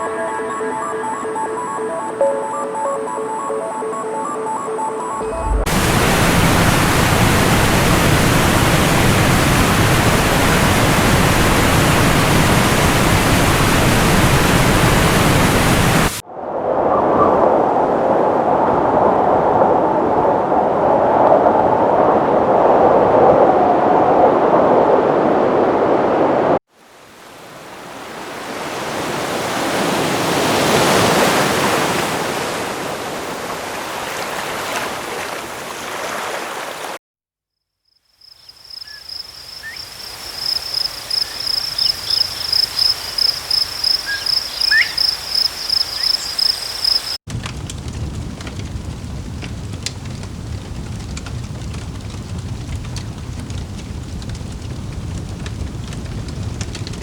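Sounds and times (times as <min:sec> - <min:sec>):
ocean wave washing: 0:00.0 - 0:37.0
rushing water: 0:05.2 - 0:16.2, 0:23.8 - 0:37.0, 0:39.2 - 0:47.2
high insect-like chirping: 0:38.2 - 0:47.2.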